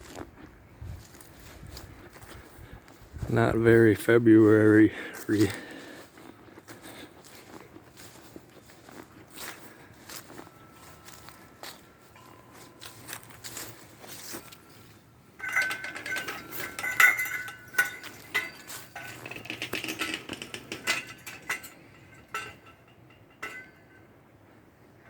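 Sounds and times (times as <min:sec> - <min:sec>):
metal wind chime ringing: 0:10.1 - 0:24.1.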